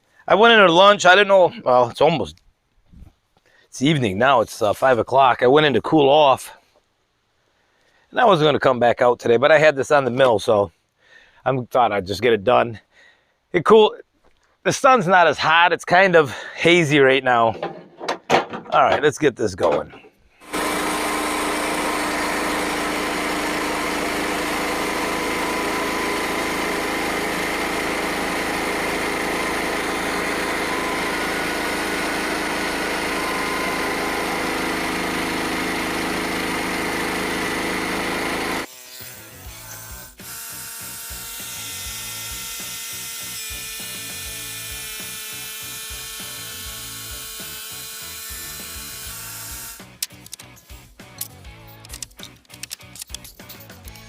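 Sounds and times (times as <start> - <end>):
band sawmill cutting log: 20.4 - 50.3.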